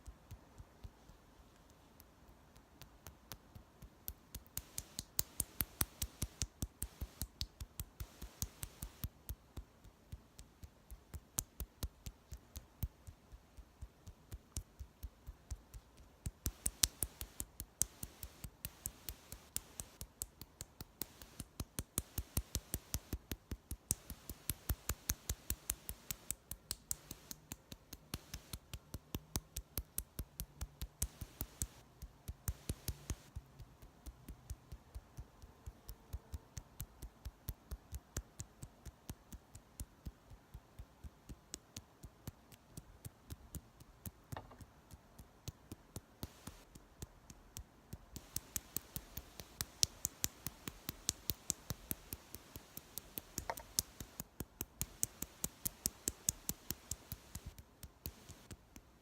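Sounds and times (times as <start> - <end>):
makeup tool tapping: 44.4 - 44.7, 53.2 - 54.2.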